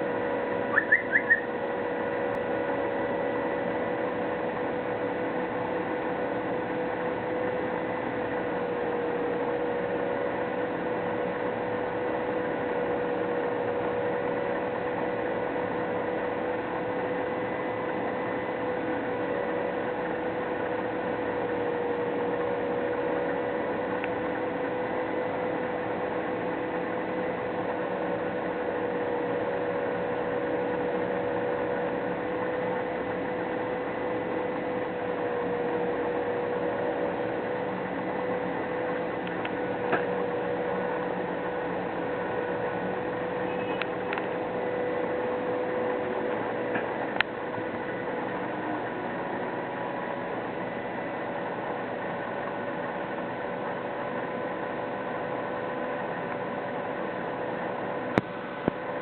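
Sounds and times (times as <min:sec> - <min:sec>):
wavering mid-pitched tone: 0:00.7 - 0:01.5.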